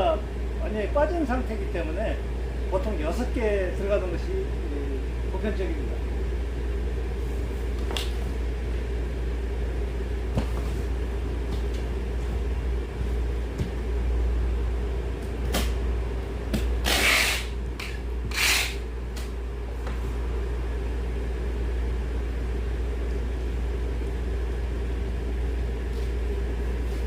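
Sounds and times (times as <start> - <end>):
steady low hum: 0.0 - 27.0
short rasping scrapes: 18.3 - 18.8.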